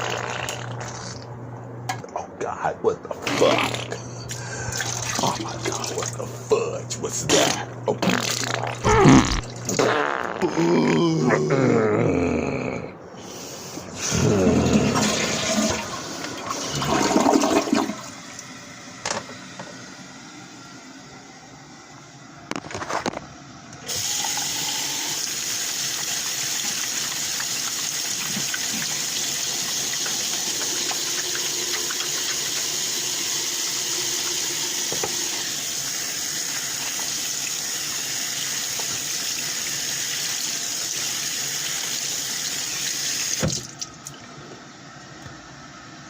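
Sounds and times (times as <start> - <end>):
water running from tap: 4.7 - 6.2, 23.9 - 43.9.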